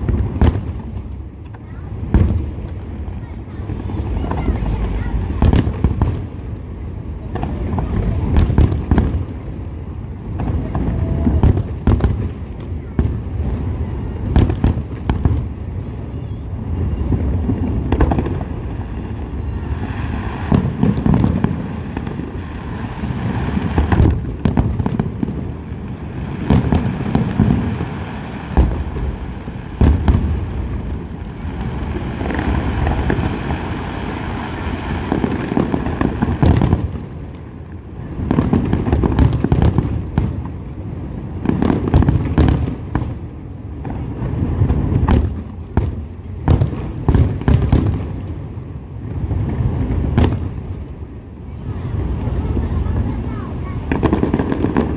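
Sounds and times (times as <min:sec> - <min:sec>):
firework shells booming: 0:00.0 - 0:13.6, 0:26.3 - 0:37.4, 0:44.6 - 0:48.3, 0:52.9 - 0:54.9
firework sharp cracks: 0:00.0 - 0:15.7, 0:17.1 - 0:54.9.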